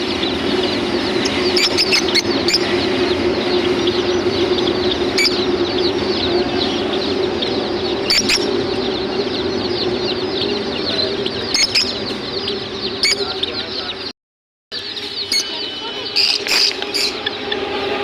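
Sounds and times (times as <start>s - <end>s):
small birds chirping: 0.0s - 14.1s, 14.8s - 18.0s
steady low hum: 0.0s - 14.1s.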